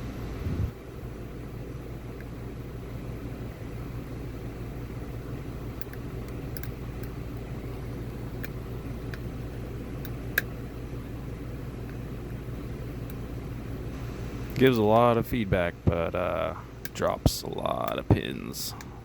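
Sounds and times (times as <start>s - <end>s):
low background hum: 0.0s - 19.0s.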